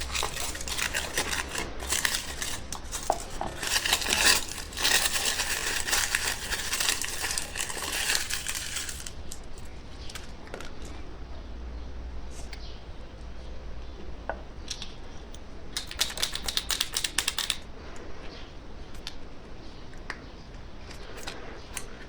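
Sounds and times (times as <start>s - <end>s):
candy wrapper crinkling: 0.0s - 10.9s.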